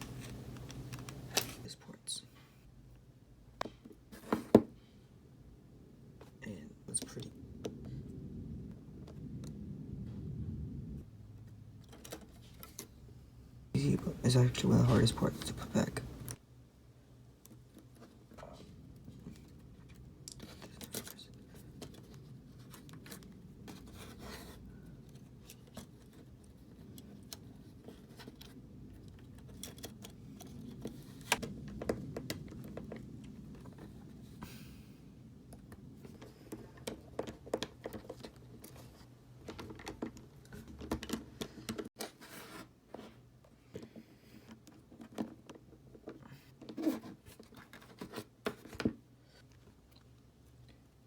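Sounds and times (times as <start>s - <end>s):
low steady hum: 0.0s - 36.6s.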